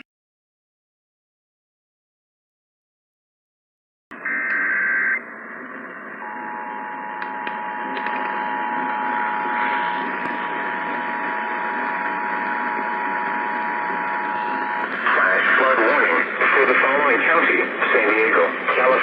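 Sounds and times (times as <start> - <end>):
two-tone attention signal: 4.1 - 5.2
shrill warbling data tone: 4.2 - 5.2
radio static: 6.2 - 19.0.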